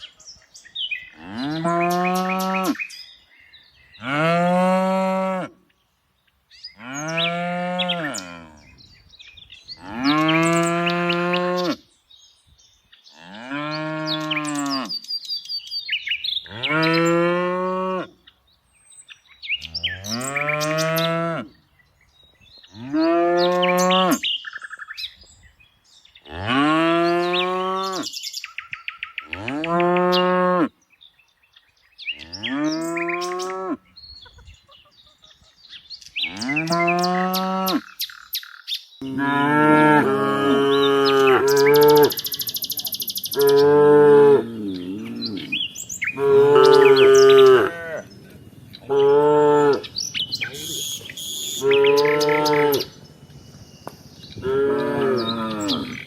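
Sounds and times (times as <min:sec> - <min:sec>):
faint birds chirping: 0:05.6 - 0:17.5, 0:18.1 - 0:39.6, 0:40.3 - 0:56.0
cow mooing: 0:09.8 - 0:11.8, 0:36.3 - 0:37.8, 0:39.0 - 0:48.1, 0:48.9 - 0:50.7, 0:51.5 - 0:53.0, 0:54.4 - 0:56.0.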